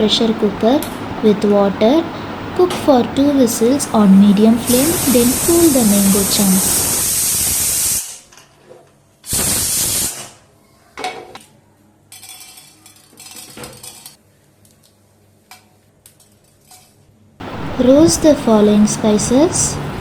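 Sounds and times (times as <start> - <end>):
hissing: 0.0 - 8.2, 9.3 - 10.2
utensils and dishes clinking: 12.1 - 14.2.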